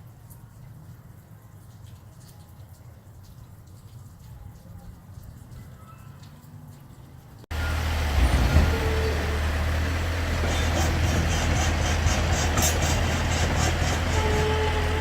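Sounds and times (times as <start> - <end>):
vehicle engine running: 7.5 - 15.0.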